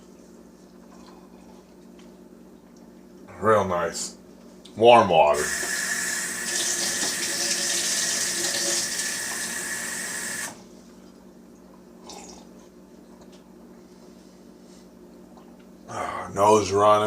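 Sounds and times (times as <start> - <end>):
whine in the pipes: 0.0 - 17.0
water tap running: 5.4 - 10.6.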